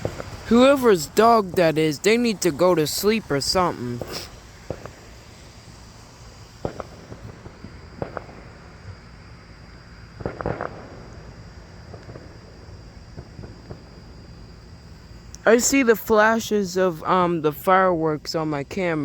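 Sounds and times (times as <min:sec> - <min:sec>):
distant fireworks bangs: 0:00.0 - 0:15.8.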